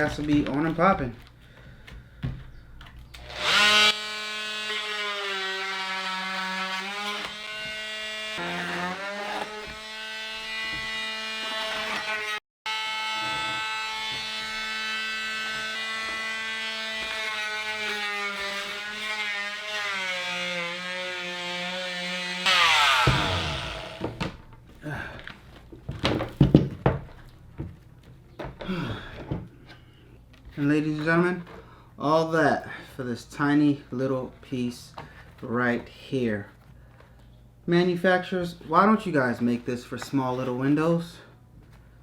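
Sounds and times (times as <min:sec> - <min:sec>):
rotary tool cutting plastic: 0:03.0 - 0:24.2.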